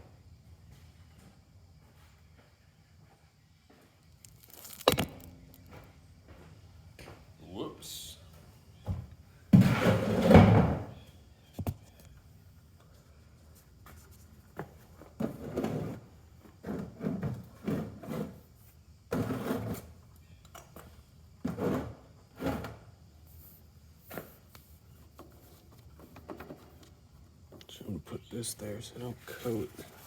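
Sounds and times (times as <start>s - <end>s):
tools clattering and knocking: 4.3s - 6.4s.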